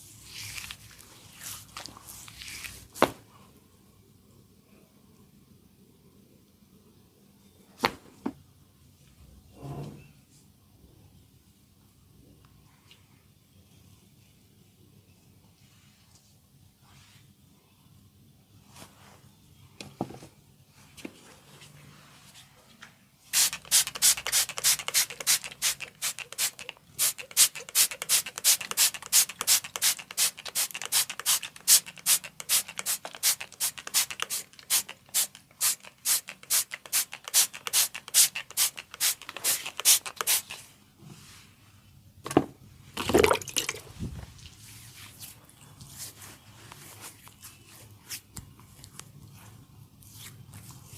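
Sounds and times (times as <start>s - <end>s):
spray bottle misting: 23.3s - 40.6s.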